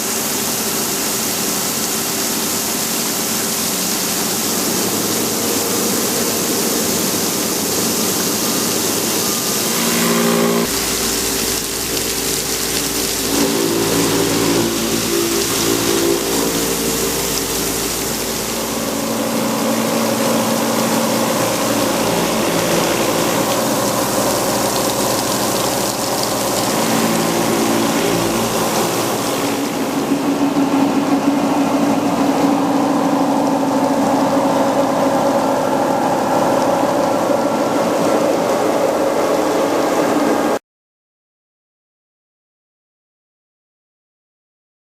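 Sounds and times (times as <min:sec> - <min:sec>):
stone-cutting saw hissing: 0:04.6 - 0:30.0
machine motor tones: 0:04.7 - 0:39.2.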